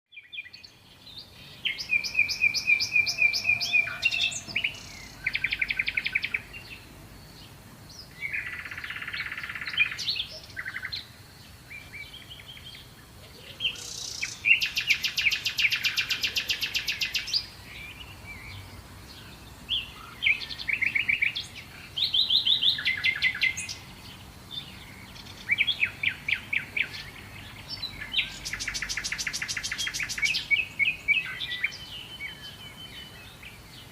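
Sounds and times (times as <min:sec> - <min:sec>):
bird trilling and chirping: 0:01.2 - 0:06.7, 0:19.7 - 0:33.1.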